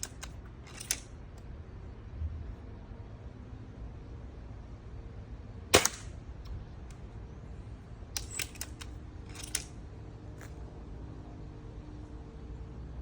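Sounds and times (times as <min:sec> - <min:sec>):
air rifle shot crack: 0:05.8 - 0:06.2.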